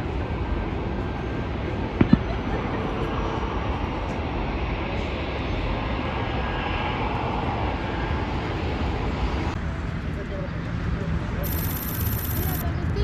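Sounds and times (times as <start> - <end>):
faint high engine whine: 0.0 - 13.0
jet engines rushing: 11.4 - 12.6.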